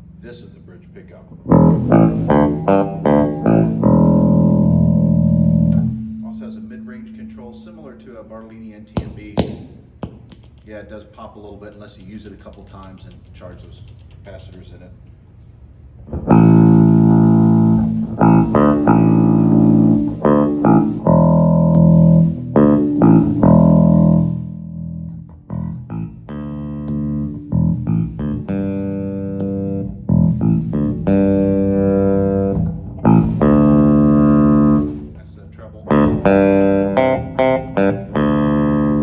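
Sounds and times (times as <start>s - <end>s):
electric bass notes and chords: 1.1s - 8.9s, 15.9s - 39.0s.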